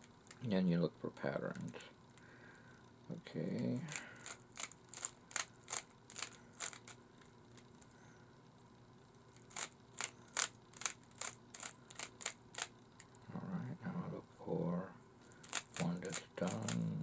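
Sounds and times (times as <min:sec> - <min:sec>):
plastic cube clicking: 0:03.9 - 0:07.0, 0:09.4 - 0:12.7.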